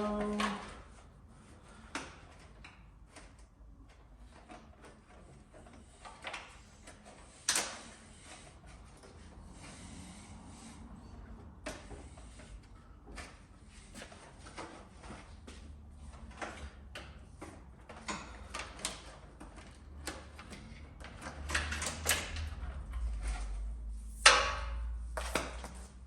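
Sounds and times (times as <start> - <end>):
clutch cable clicks and rustles: 11.6 - 26.0.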